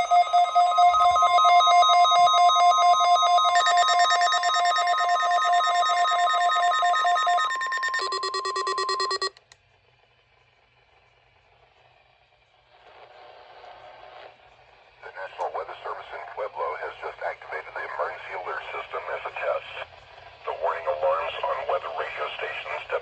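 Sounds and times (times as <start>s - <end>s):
electronic alarm warbling: 0.0s - 9.3s.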